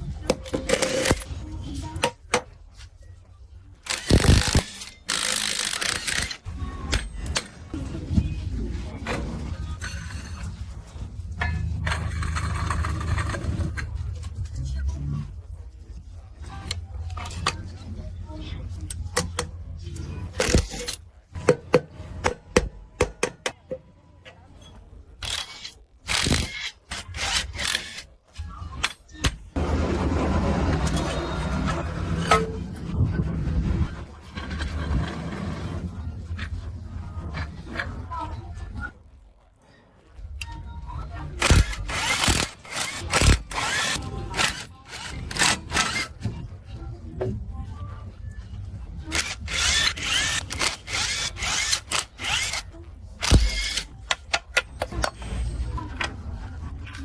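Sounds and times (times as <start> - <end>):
metal tools clicking and knocking: 53.3 - 56.2.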